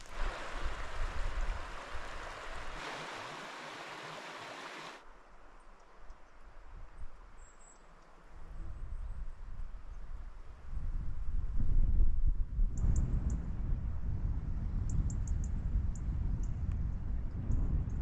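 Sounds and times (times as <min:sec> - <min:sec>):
stream water flowing: 0:00.0 - 0:05.1.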